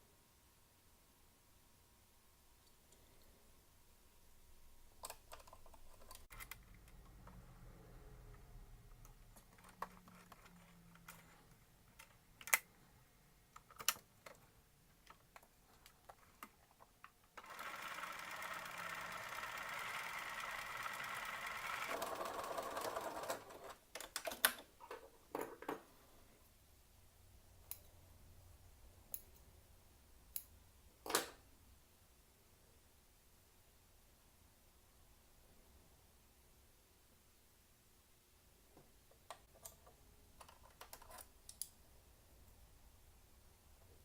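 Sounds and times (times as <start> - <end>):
sewing machine stitching: 17.4 - 23.8.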